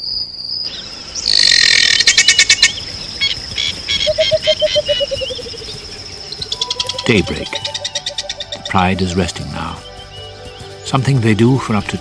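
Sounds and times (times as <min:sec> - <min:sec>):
high insect trill: 0:00.0 - 0:11.8
low hooting note: 0:06.4 - 0:08.7.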